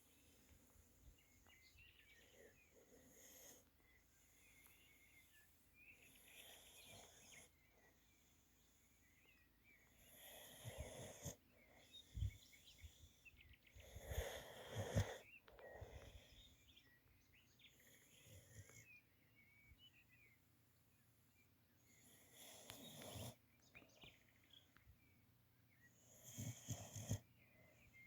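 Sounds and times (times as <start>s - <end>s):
dog snoring: 10.0s - 11.4s, 13.8s - 16.3s, 22.0s - 23.4s, 26.0s - 27.3s.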